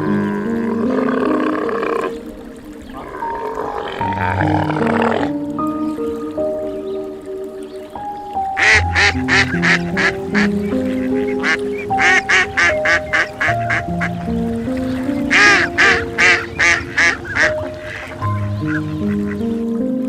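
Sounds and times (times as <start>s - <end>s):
background music: 0.0s - 20.0s
duck quacking: 8.6s - 14.2s, 15.2s - 19.3s.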